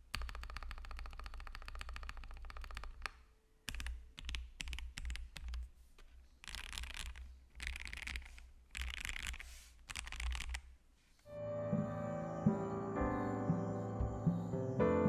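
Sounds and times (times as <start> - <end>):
mechanical keyboard typing: 0.0 - 5.6, 6.4 - 10.7.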